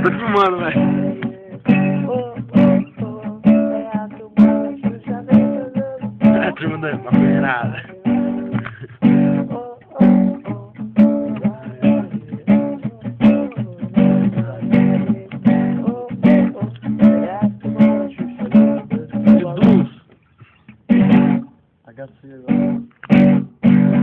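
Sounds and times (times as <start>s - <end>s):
acoustic guitar strumming: 0.0s - 24.0s.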